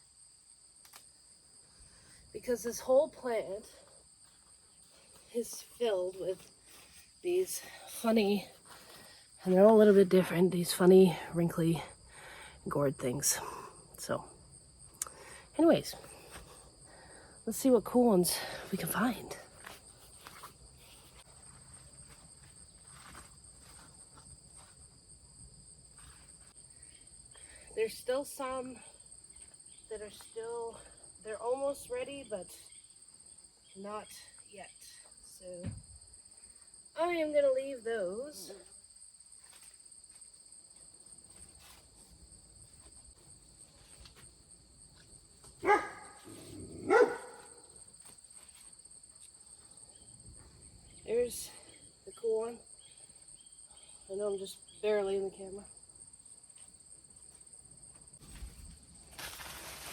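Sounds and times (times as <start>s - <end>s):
crickets trilling: 0.0s - 59.9s
footsteps: 19.4s - 24.8s, 57.3s - 59.9s
dog barking: 45.6s - 47.6s
leaves rustling: 58.2s - 59.9s.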